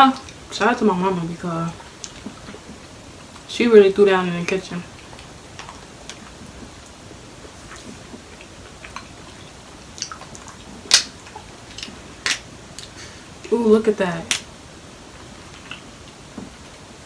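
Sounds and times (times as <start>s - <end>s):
person chewing: 7.6s - 13.2s.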